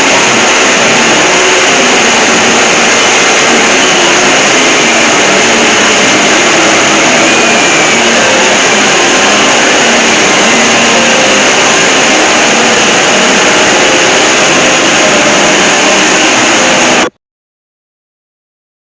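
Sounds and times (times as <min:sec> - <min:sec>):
distorted emergency alarm: 0:00.0 - 0:17.1.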